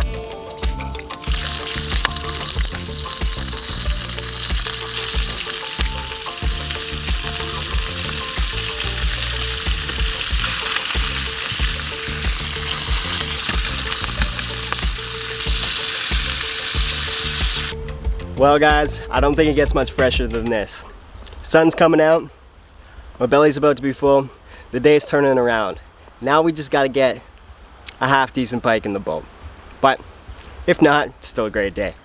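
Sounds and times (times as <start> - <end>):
fish frying in hot oil: 0.0 - 17.8.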